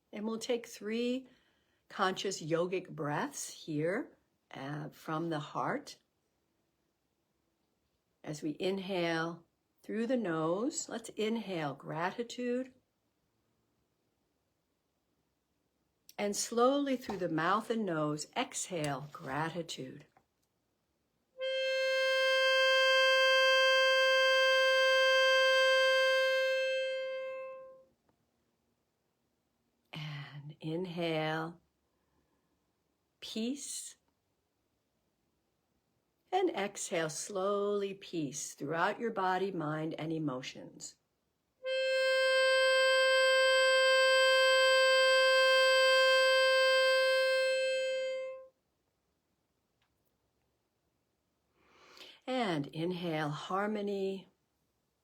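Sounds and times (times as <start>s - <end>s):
held instrument note: 21.4s - 27.8s, 41.6s - 48.5s.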